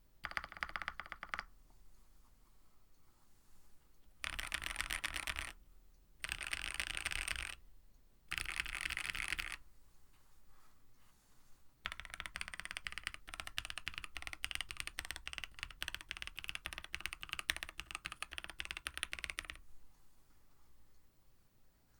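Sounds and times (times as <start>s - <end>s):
typing on mechanical keyboard: 0.2s - 1.5s, 4.2s - 5.6s, 6.2s - 7.6s, 8.3s - 9.6s, 11.9s - 19.6s.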